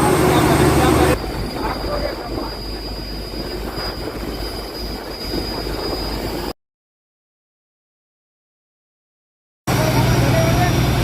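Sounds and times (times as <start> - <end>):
engine rumble: 0.0 - 6.4, 9.7 - 11.0
high whine: 0.0 - 6.6.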